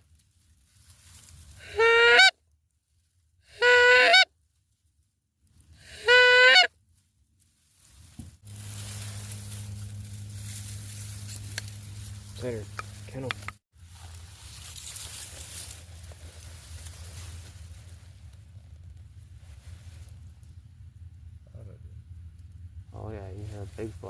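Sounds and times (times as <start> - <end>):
goose honks: 1.6 - 2.3, 3.5 - 4.3, 5.9 - 6.7
low hum with hiss: 6.8 - 24.0.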